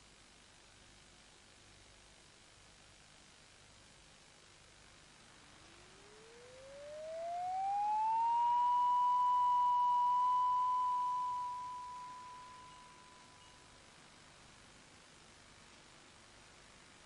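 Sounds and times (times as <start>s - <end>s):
faint tape hiss: 0.0s - 17.0s
electronic tone gliding upward: 5.9s - 13.4s.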